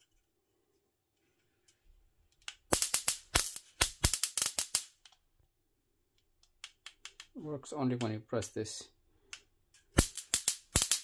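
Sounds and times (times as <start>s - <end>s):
electric fly zapper crackling: 10.0s - 11.0s.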